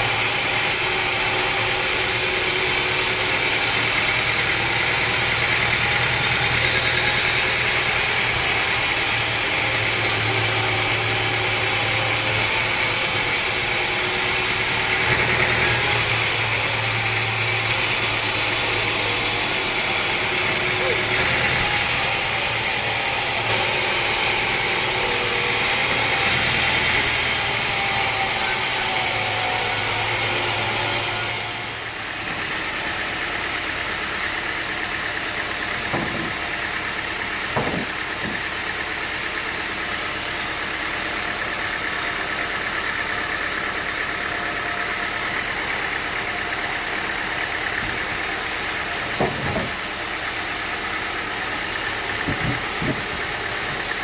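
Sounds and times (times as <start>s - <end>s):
sawmill machinery running: 0.0s - 54.0s
short knocks: 35.8s - 36.5s, 37.5s - 38.5s, 52.2s - 53.2s.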